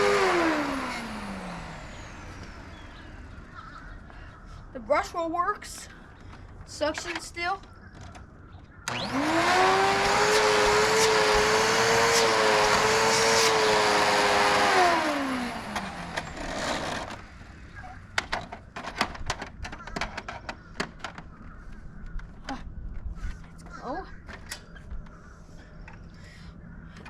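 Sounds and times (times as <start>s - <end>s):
vacuum cleaner motor: 0.0s - 3.3s, 8.9s - 17.3s
clicks and knocks of handling: 6.2s - 9.0s, 18.1s - 23.7s.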